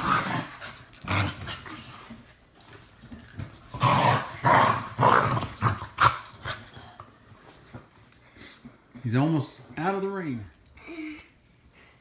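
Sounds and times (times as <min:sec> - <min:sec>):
dog growling: 0:03.8 - 0:06.1.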